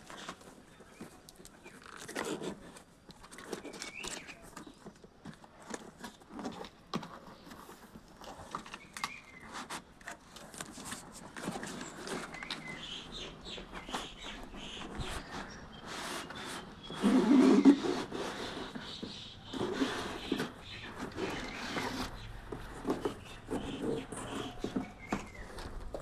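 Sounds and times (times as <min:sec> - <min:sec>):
high squeaks: 0:13.8 - 0:26.0.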